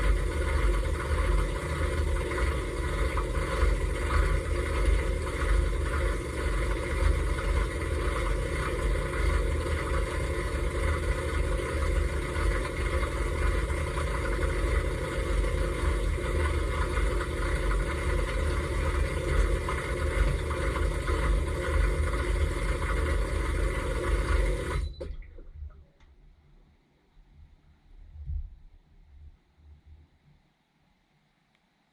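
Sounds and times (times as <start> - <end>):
dishwasher wash noise: 0.0 - 25.8
low rumble: 27.4 - 30.0.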